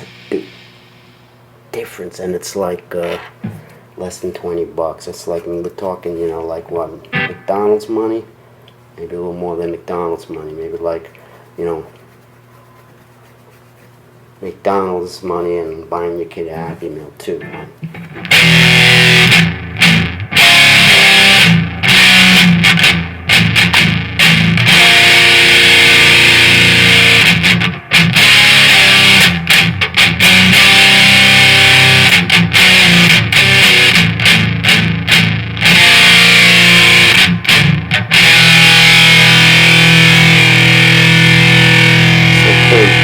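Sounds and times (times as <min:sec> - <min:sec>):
distorted electric guitar: 0:00.0 - 0:01.4, 0:02.9 - 0:03.7, 0:06.7 - 0:07.9, 0:17.4 - 0:43.0.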